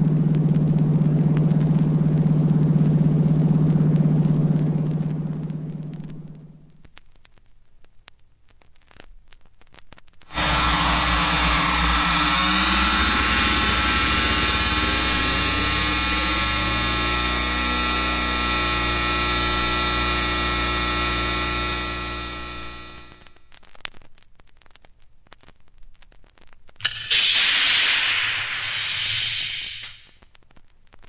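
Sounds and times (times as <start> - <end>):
machine-like electronic drone: 0.0 - 6.6, 10.3 - 23.3, 26.8 - 30.0
hiss: 26.8 - 30.2.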